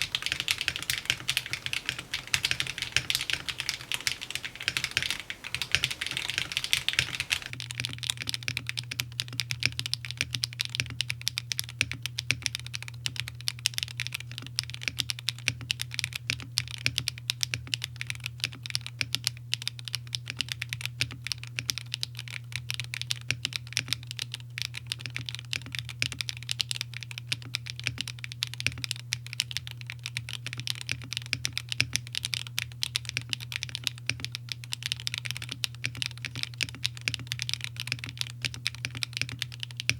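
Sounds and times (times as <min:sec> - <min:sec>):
faint low hum: 0:00.0 - 0:07.8
mechanical keyboard typing: 0:00.0 - 0:39.9.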